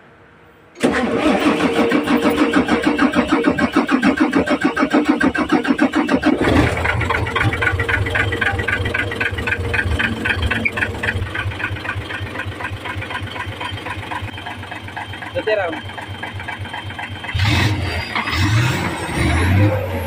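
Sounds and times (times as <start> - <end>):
starter motor cranking: 0.8 - 19.0
diesel engine running: 0.8 - 20.0.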